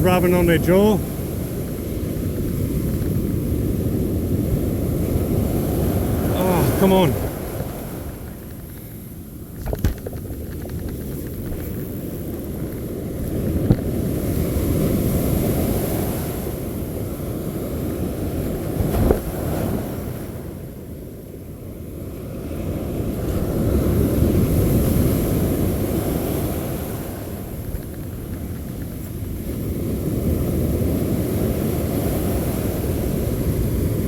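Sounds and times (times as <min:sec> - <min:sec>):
surf breaking on beach: 0:00.0 - 0:21.1
wind buffeting microphone: 0:00.0 - 0:34.0.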